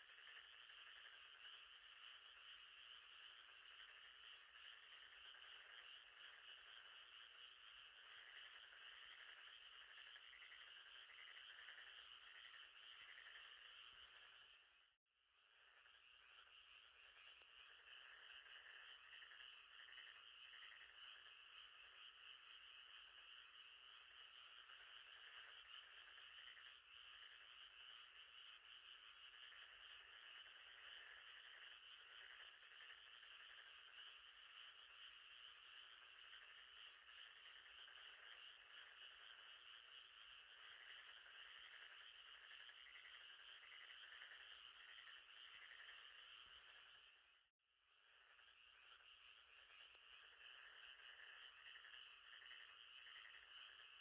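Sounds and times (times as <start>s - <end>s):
frogs trilling: 0.0s - 54.0s.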